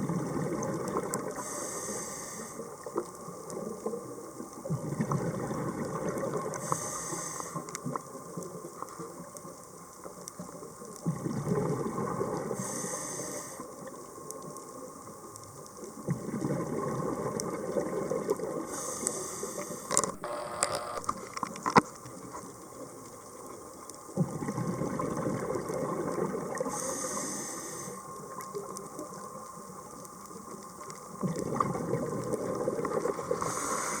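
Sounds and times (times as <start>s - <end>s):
exhaled bubbles rushing: 0.0s - 1.4s, 4.7s - 6.5s, 16.0s - 18.6s, 24.2s - 26.7s, 31.2s - 34.0s
regulator hiss on inhale: 1.3s - 3.0s, 6.5s - 7.9s, 12.5s - 13.9s, 18.6s - 21.0s, 26.6s - 28.4s, 33.3s - 34.0s
sharp clicks: 19.9s - 21.8s.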